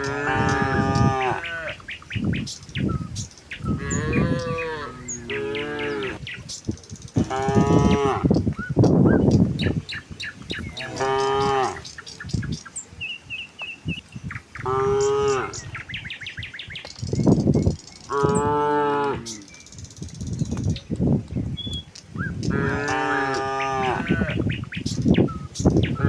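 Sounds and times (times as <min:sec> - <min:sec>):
cattle mooing: 0:00.0 - 0:01.8, 0:03.6 - 0:06.2, 0:07.2 - 0:08.4, 0:10.7 - 0:11.8, 0:14.6 - 0:15.7, 0:18.1 - 0:19.5, 0:22.5 - 0:24.4
rough low cattle calls: 0:00.0 - 0:02.1, 0:03.5 - 0:06.4, 0:07.1 - 0:08.8, 0:09.6 - 0:12.3, 0:14.4 - 0:16.0, 0:18.0 - 0:19.6, 0:22.3 - 0:24.8, 0:25.4 - 0:26.0.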